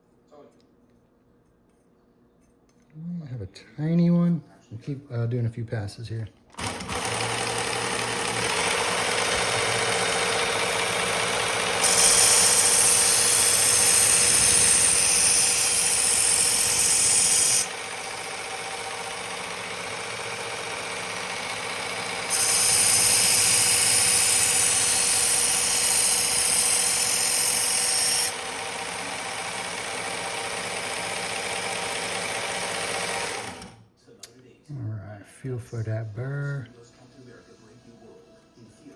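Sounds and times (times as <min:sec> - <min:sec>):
knife sharpening machine humming: 0:06.5 - 0:33.8
high-pitched grinding hiss: 0:11.8 - 0:17.7.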